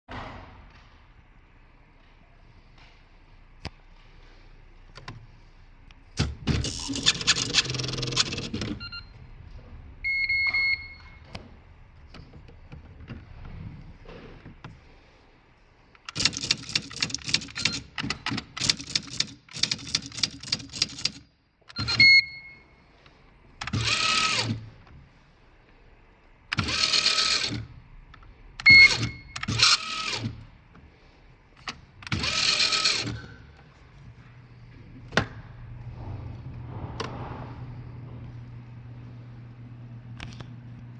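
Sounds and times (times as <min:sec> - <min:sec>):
typewriter carrier whirring: 0:06.2 - 0:08.9, 0:16.0 - 0:22.4, 0:23.6 - 0:24.7, 0:26.5 - 0:27.7, 0:28.6 - 0:30.4, 0:31.6 - 0:33.4
typewriter motor hum: 0:06.2 - 0:09.0, 0:16.0 - 0:22.4, 0:23.6 - 0:24.9, 0:26.5 - 0:30.5, 0:31.6 - 0:33.5
short beep: 0:10.1 - 0:11.2
typewriter clicks: 0:16.0 - 0:21.9.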